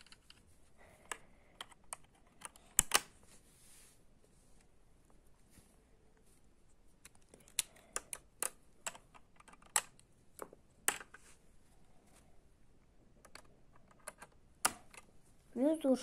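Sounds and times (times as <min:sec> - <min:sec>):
plastic parts clicking: 0:00.0 - 0:03.2, 0:07.0 - 0:11.2, 0:13.2 - 0:15.1.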